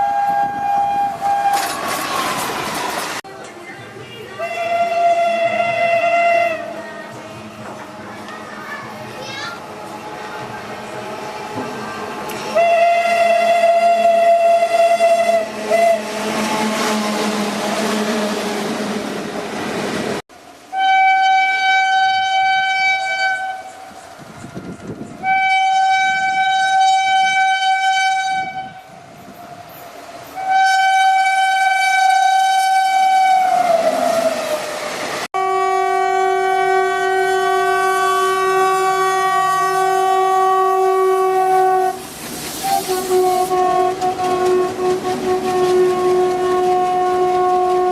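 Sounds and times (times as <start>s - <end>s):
locomotive horn blasts: 0.0s - 1.8s, 4.4s - 6.8s, 12.5s - 18.2s, 20.7s - 23.8s, 25.2s - 28.9s, 30.4s - 34.4s, 35.4s - 42.0s, 42.6s - 47.9s
passing train rumble: 0.0s - 47.9s.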